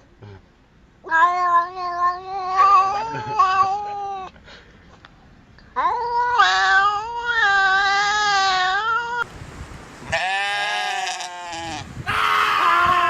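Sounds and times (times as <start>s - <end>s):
cat yowling: 1.1s - 4.3s, 5.8s - 9.2s, 10.3s - 13.0s.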